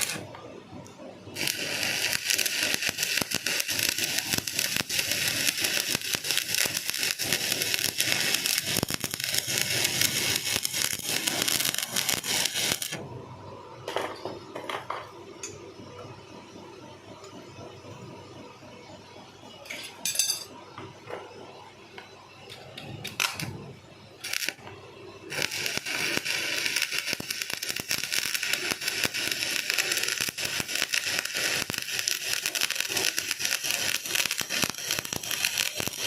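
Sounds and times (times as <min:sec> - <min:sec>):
arc welding crackling hiss: 0:00.0 - 0:00.3, 0:01.3 - 0:13.0, 0:24.2 - 0:24.7, 0:25.3 - 0:36.0.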